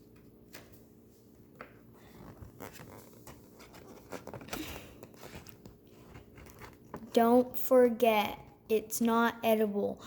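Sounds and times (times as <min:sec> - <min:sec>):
cardboard box rustling: 0:02.5 - 0:07.0.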